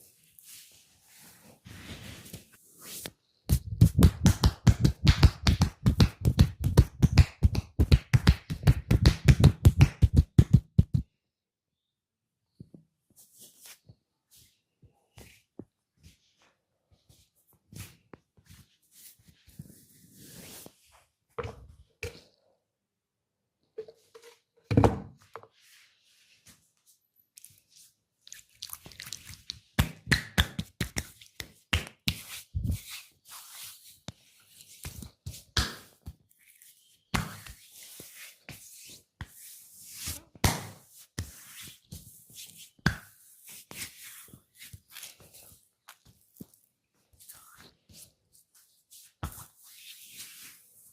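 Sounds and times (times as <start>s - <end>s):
hands rubbing on body: 0.3s - 11.0s, 27.4s - 35.6s, 40.8s - 46.6s
hands slapping on body: 3.5s - 11.1s, 28.9s - 32.8s, 34.8s - 36.0s, 37.1s - 37.6s.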